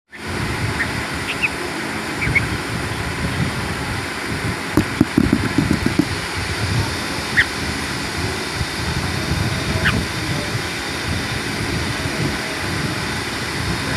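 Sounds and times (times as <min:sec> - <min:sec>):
low knocks: 0:04.8 - 0:06.1.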